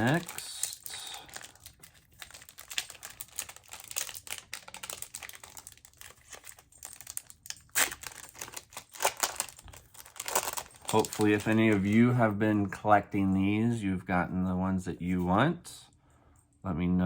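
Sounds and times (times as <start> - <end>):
foil pack crinkling and tearing: 0.0 - 12.2.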